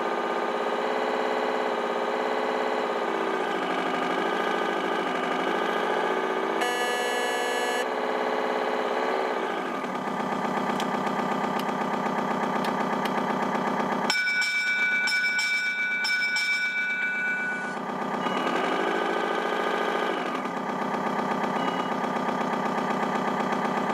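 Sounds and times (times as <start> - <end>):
ship diesel engine sound: 0.0 - 23.9
high two-note tone: 6.6 - 7.8
pulsing higher ring: 14.1 - 17.8.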